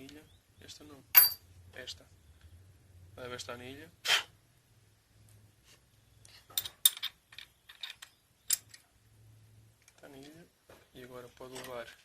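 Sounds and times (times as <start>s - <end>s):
metallic clicks and clinks: 1.2s - 1.4s.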